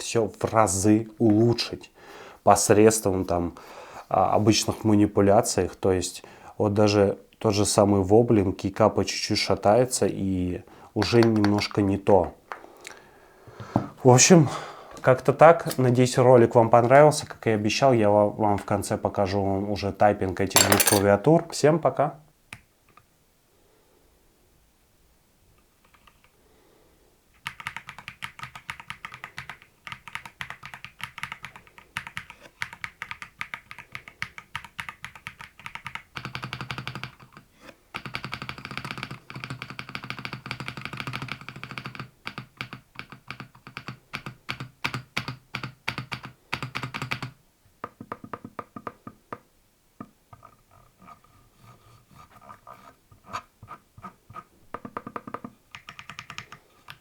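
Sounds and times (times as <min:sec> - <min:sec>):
fast typing on mechanical keyboard: 0:27.4 - 0:47.4, 0:54.8 - 0:57.0.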